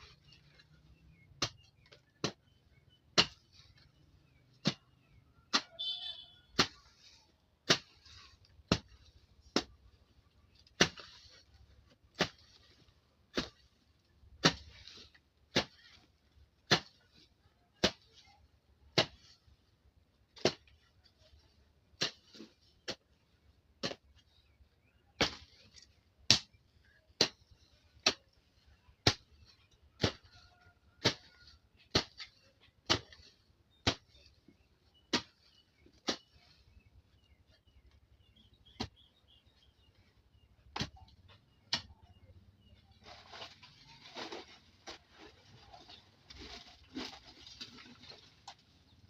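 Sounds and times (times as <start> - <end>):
hoe chopping into soil: 10.6 - 11.4, 14.3 - 17.0, 25.1 - 30.4, 31.0 - 36.4.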